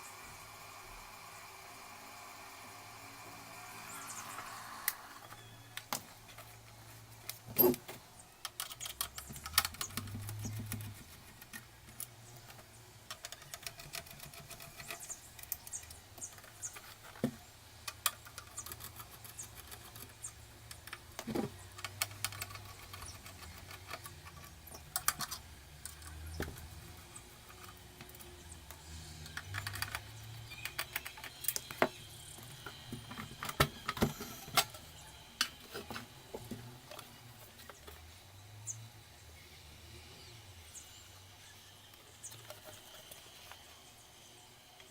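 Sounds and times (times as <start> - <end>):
small hard parts clicking: 4.2 - 38.0.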